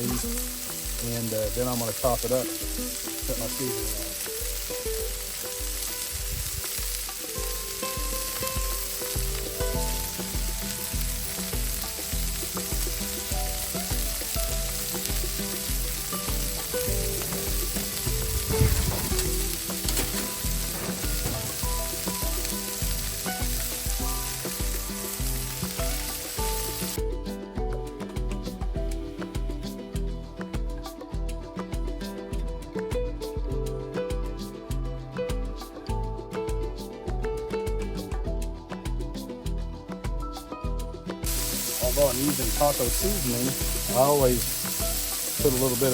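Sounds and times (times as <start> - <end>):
meat sizzling on a griddle: 0.0 - 27.0, 41.2 - 45.9
background music with steady beat: 0.0 - 45.9.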